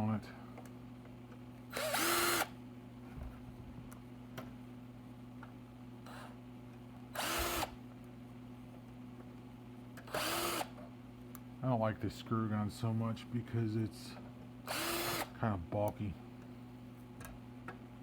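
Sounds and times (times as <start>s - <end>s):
low electrical hum: 0.0s - 18.0s
electric screw gun whining: 1.7s - 2.6s, 7.2s - 7.8s, 10.1s - 10.8s, 14.7s - 15.3s.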